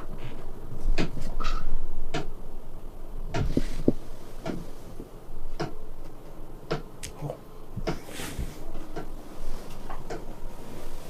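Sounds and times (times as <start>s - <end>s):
low steady hum: 0.0s - 11.0s
sharp clicks and knocks: 0.9s - 2.3s, 3.3s - 4.7s, 9.8s - 10.3s.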